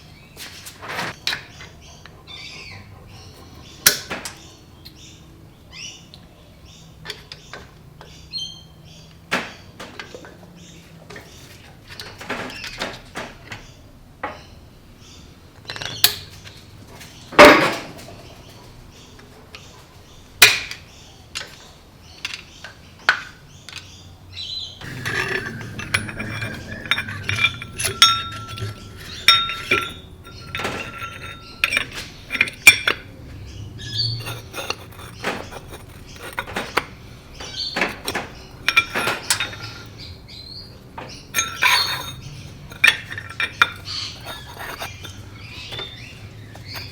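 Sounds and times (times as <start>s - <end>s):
metal parts and tools clinking: 24.8s - 46.9s.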